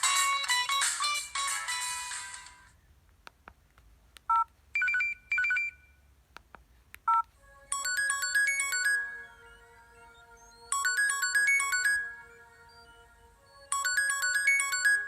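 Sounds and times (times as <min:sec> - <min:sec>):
synthesized ringtone melody: 0:07.4 - 0:15.0.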